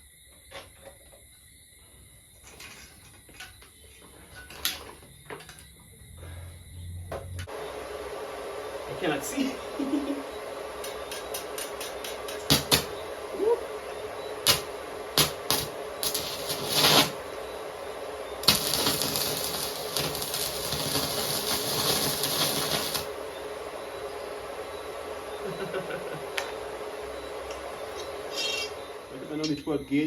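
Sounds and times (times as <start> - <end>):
welding arc crackling: 7.8 - 29.5.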